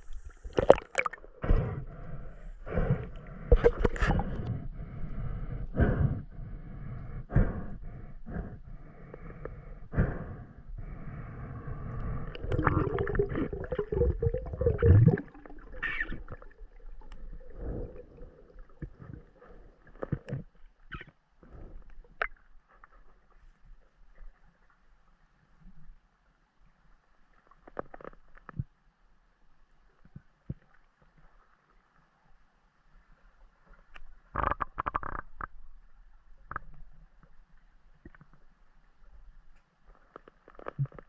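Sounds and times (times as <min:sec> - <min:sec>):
water gurgling and bubbling: 0:12.0 - 0:19.7.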